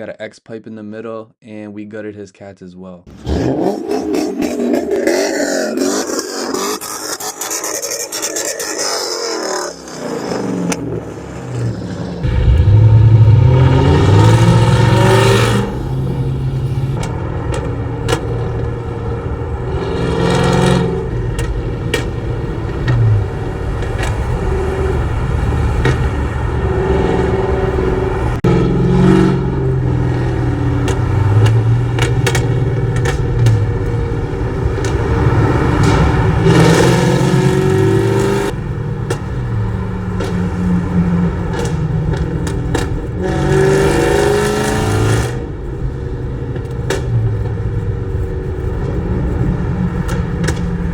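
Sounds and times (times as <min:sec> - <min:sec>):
car engine revving loudly: 0:12.2 - 0:47.5.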